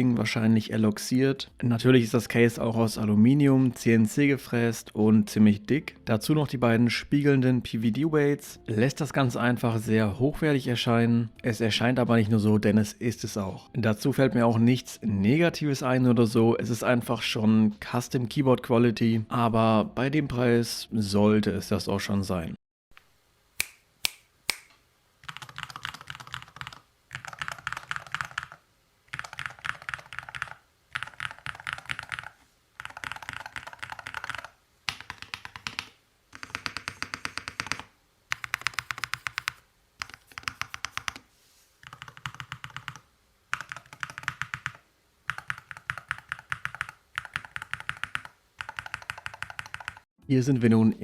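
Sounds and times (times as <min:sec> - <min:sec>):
fast keyboard typing: 0:25.2 - 0:41.2, 0:41.8 - 0:50.1.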